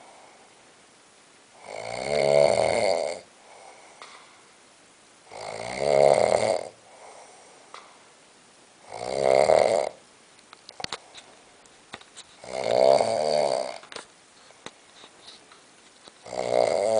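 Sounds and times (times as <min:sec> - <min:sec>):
quiet breathing: 0:00.0 - 0:00.8, 0:03.2 - 0:05.4, 0:06.6 - 0:08.2, 0:10.7 - 0:16.9
person snoring: 0:01.6 - 0:04.0, 0:05.3 - 0:07.6, 0:08.8 - 0:10.0, 0:12.4 - 0:13.9, 0:16.2 - 0:16.9.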